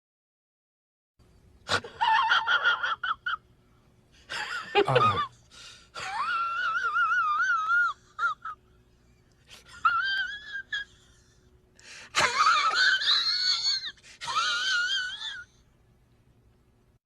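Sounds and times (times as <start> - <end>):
high-pitched wavering wailing cry: 6.0 - 8.6, 9.7 - 11.2, 12.6 - 15.6.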